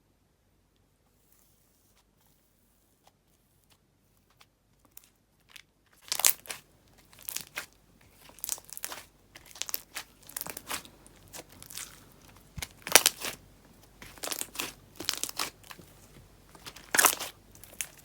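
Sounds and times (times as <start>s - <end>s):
slime crackling and squishing: 4.3s - 18.0s.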